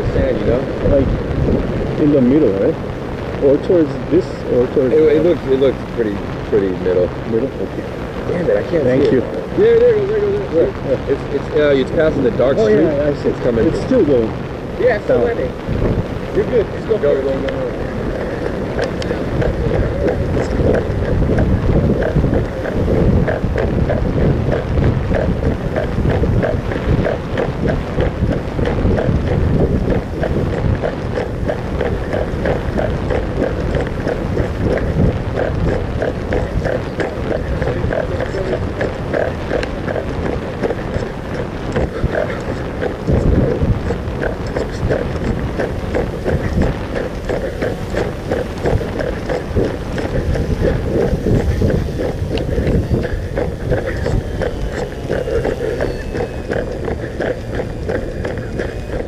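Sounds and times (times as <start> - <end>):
wind buffeting microphone: 0.0 - 59.0
hurried footsteps: 15.1 - 59.0
recording gear rubbing clothing: 17.6 - 59.0.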